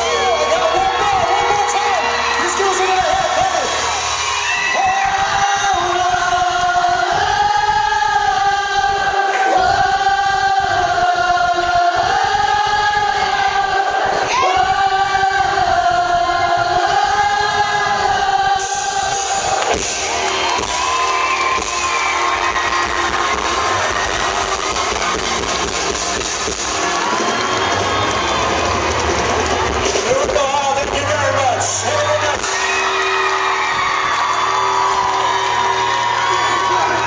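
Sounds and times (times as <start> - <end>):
rock band playing live: 18.6 - 32.8.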